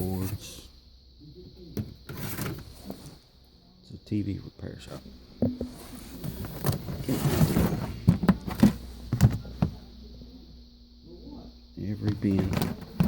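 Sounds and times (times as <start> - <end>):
irregular knocks and thumps: 5.4 - 6.9.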